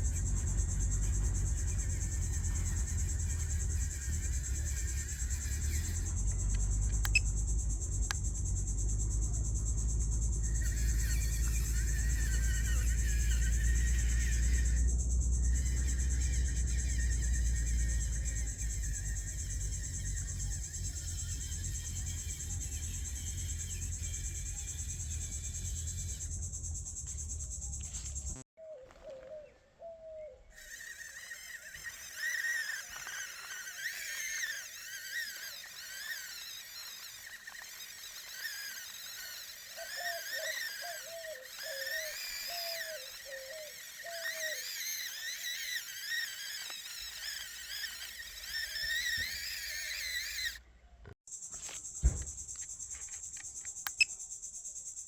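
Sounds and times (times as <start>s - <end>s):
insects chirping: 0.0s - 29.0s, 30.5s - 55.0s
birds calling: 36.9s - 45.2s.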